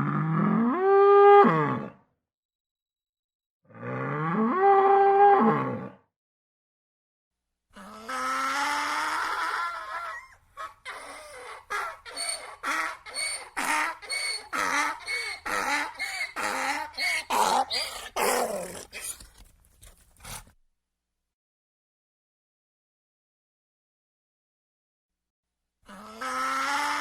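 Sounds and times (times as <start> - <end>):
animal calling: 7.8 - 19.3, 25.9 - 27.0.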